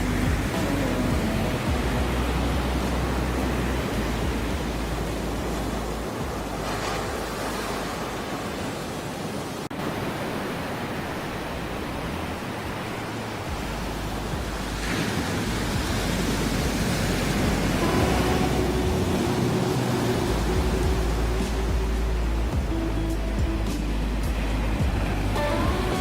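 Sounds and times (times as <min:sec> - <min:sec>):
ocean surf washing: 0:00.0 - 0:26.0.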